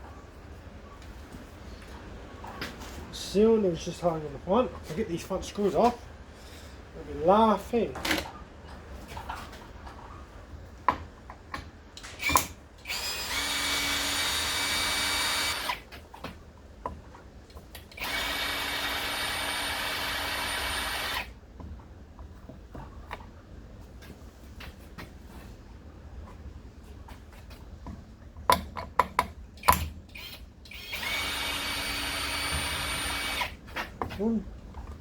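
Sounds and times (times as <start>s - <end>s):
electric drill-driver running: 12.2s - 15.8s, 17.9s - 21.3s, 30.2s - 33.6s.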